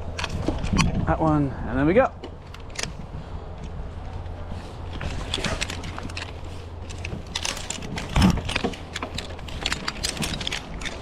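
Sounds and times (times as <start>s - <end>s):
metal clips clinking: 4.9s - 11.0s.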